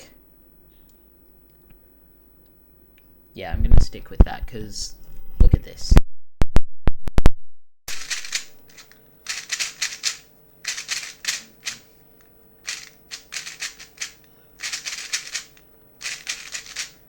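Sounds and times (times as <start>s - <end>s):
puzzle cube plastic clicks: 7.9s - 11.8s, 12.7s - 17.0s.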